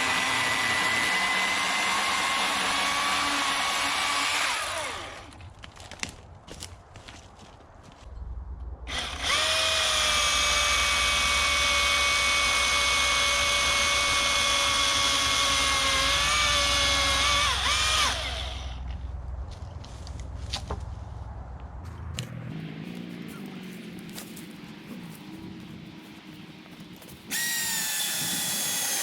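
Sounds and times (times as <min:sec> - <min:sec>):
electric chainsaw whining: 0:00.0 - 0:05.4, 0:08.9 - 0:18.8, 0:27.3 - 0:29.0.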